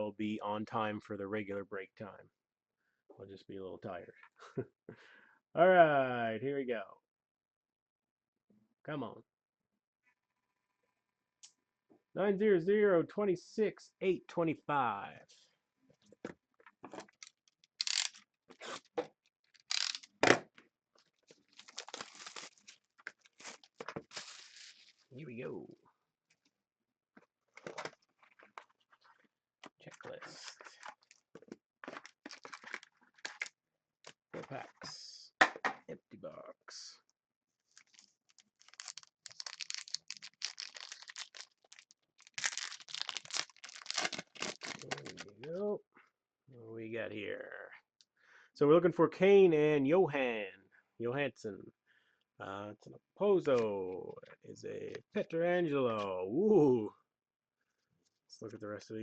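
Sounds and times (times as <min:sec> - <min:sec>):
plastic wrapping crinkling and tearing: 0:19.5 - 0:20.1, 0:21.3 - 0:25.1, 0:30.8 - 0:33.5, 0:37.7 - 0:45.5.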